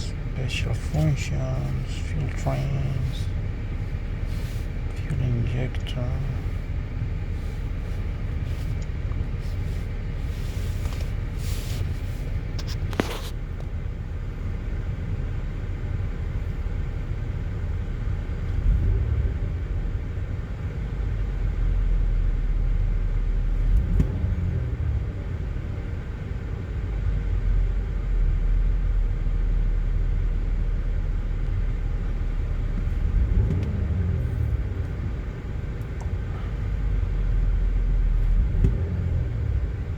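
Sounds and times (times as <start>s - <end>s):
misfiring engine idling: 0.0s - 23.6s.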